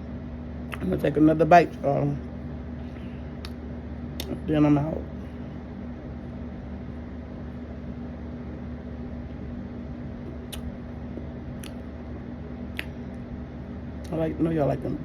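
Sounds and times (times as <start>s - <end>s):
low fan-like hum: 0.0s - 15.0s.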